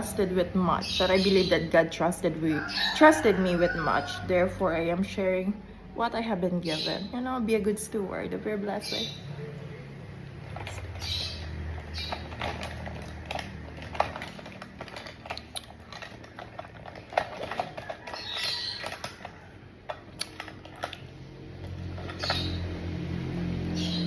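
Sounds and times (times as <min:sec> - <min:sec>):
small hard objects clattering: 0:10.3 - 0:24.0.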